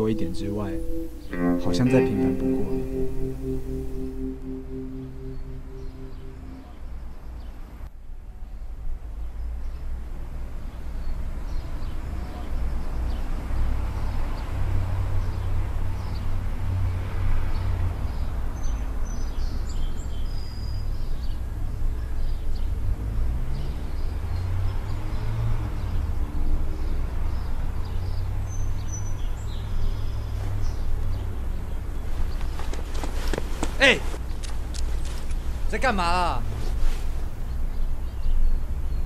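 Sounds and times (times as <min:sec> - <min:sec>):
bird chirps: 0:00.0 - 0:06.8.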